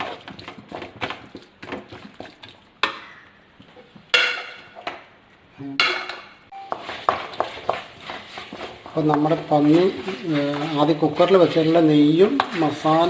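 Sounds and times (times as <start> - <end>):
spoon scraping metal pan: 6.0 - 13.0.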